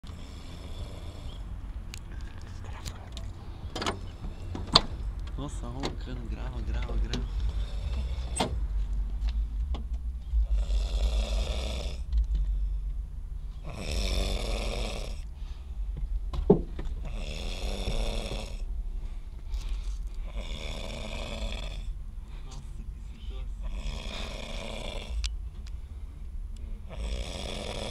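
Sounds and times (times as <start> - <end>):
man snoring heavily: 0.0 - 1.5, 7.2 - 8.6, 10.4 - 12.1, 13.6 - 15.3, 17.0 - 18.7, 20.2 - 22.0, 23.6 - 25.3, 26.8 - 27.9.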